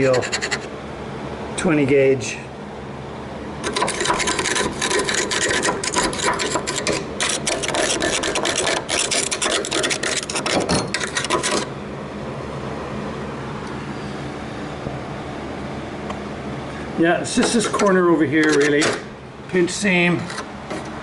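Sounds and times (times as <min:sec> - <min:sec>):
scraping on rusty sheet metal: 0:00.0 - 0:00.7, 0:03.6 - 0:11.7.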